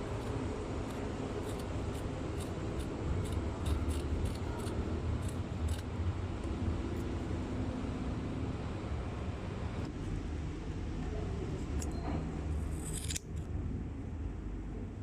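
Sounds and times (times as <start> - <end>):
scissors snipping: 0.0 - 5.9, 12.8 - 13.4
low background hum: 0.0 - 15.0.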